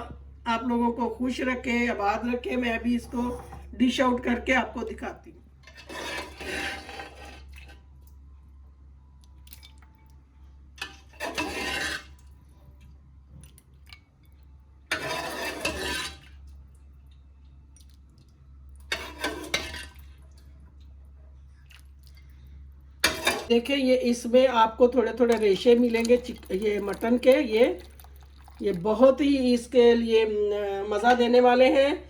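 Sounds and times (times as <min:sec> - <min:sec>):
ladle knocking: 0:25.2 - 0:28.9
broth pouring into bowl: 0:25.3 - 0:29.2.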